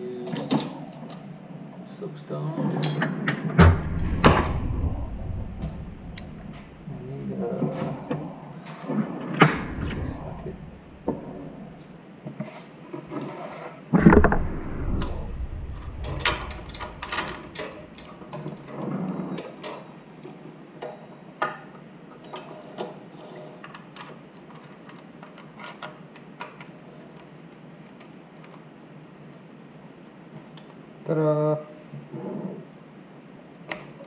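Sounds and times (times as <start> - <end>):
loud knock: 3.6 - 6.8, 14.0 - 18.1.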